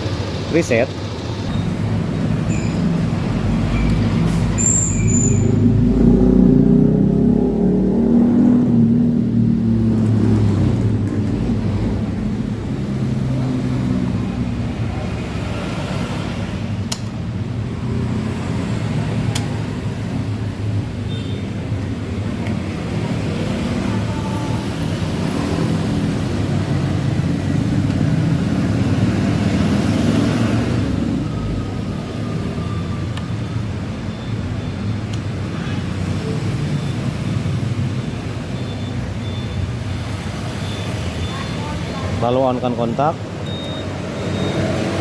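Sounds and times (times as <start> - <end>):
scooter engine running: 0.0 - 2.4
sharp clicks: 16.9 - 17.2.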